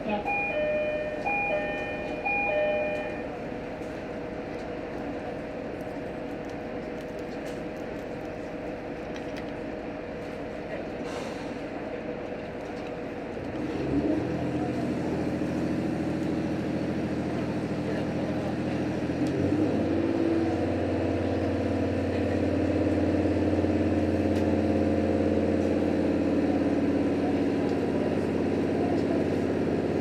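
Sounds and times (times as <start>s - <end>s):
railcar diesel engine running: 0.0s - 30.0s
electronic chime: 0.3s - 3.3s.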